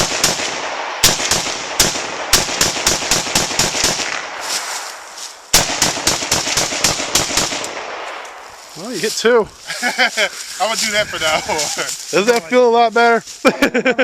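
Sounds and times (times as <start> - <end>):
rapid semi-automatic gunfire: 0.0 - 4.6, 5.5 - 8.2.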